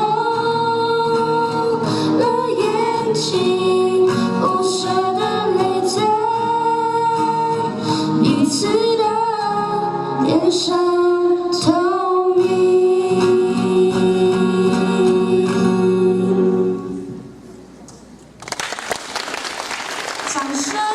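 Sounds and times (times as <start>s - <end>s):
women singing: 0.0s - 17.0s, 20.4s - 20.9s
acoustic guitar: 0.0s - 18.4s.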